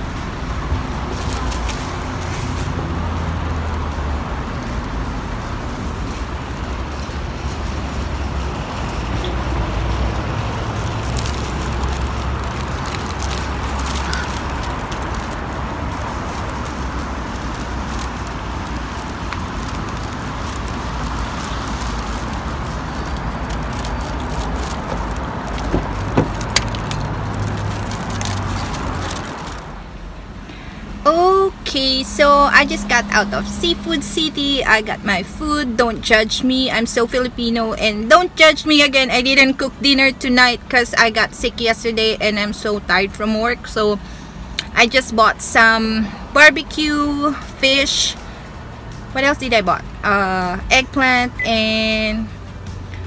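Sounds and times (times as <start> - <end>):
car engines running: 0.0 - 38.9
cars passing: 0.0 - 53.0.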